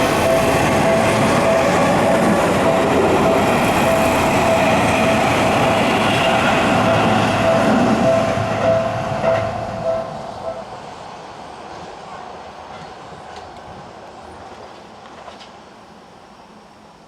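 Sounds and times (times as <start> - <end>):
crossing warning bell ringing: 0.0 - 10.8
train wheels rumbling on rails: 0.0 - 16.6.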